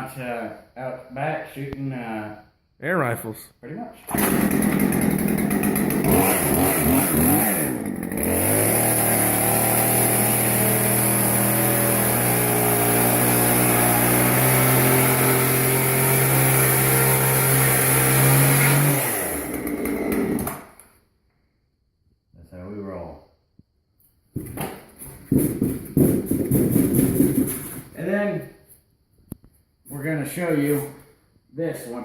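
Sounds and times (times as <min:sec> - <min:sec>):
small engine revving: 0:04.1 - 0:20.8.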